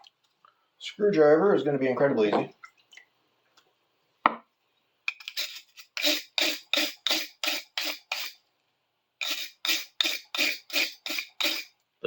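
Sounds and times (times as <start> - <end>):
abrasive rubbing on screwdriver: 5.1 - 8.4, 9.2 - 11.7.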